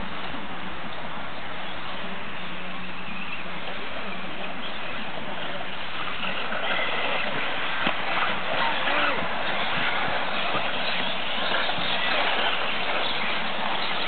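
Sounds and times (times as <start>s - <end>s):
tyre noise: 5.4s - 14.0s.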